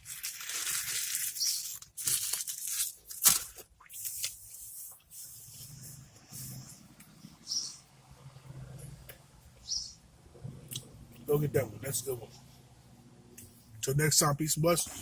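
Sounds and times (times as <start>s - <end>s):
rustling and crinkling: 0.0s - 7.1s.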